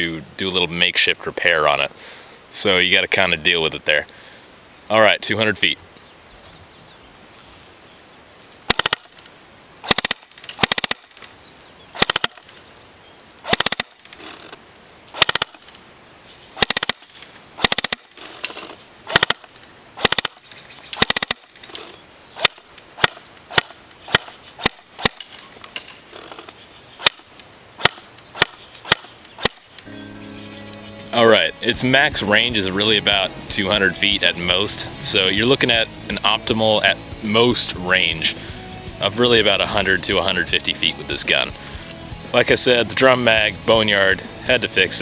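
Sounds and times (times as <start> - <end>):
airsoft gun firing: 8.7 - 9.2, 9.8 - 11.2, 12.0 - 12.5, 13.4 - 14.3, 15.1 - 15.7, 16.6 - 18.2, 19.1 - 20.4, 21.0 - 21.6, 22.4 - 25.3, 27.0 - 29.7.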